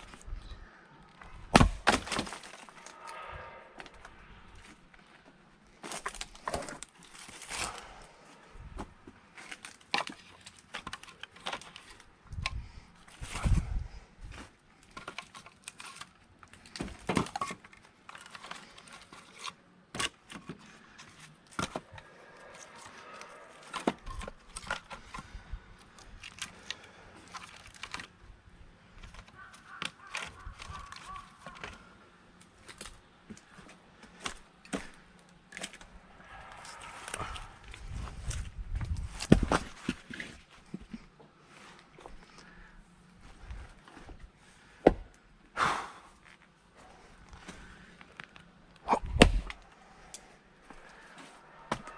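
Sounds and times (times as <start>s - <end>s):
axe splitting firewood: 1.3s - 2.7s, 8.8s - 28.2s, 36.6s - 41.0s, 43.4s - 46.0s, 48.8s - 49.6s, 51.7s - 51.9s.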